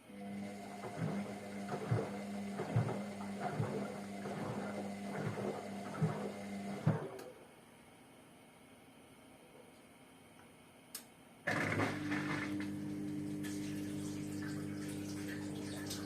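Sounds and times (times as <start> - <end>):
washing machine motor hum: 0.0 - 7.6, 11.5 - 16.0
wet laundry tumbling: 0.4 - 6.9.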